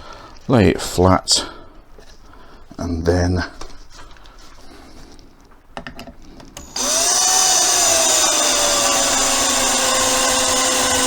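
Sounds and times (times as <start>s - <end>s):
drill motor whining: 6.6s - 11.0s.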